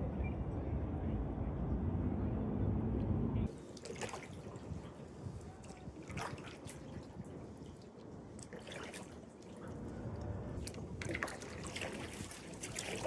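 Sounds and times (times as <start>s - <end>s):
paddle splashing in water: 3.5s - 9.9s, 10.6s - 13.0s.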